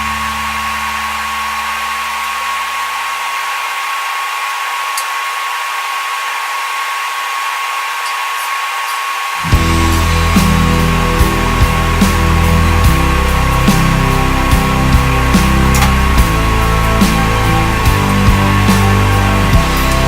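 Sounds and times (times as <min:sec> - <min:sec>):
music: 0:00.0 - 0:02.0, 0:09.4 - 0:20.0
power tool whirring: 0:00.0 - 0:20.0.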